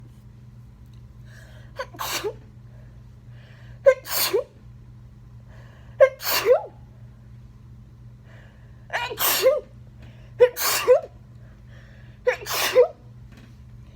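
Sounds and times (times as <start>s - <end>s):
person sneezing: 1.8s - 2.4s, 3.9s - 4.5s, 6.0s - 6.8s, 9.0s - 9.7s, 10.4s - 11.1s, 12.3s - 13.0s.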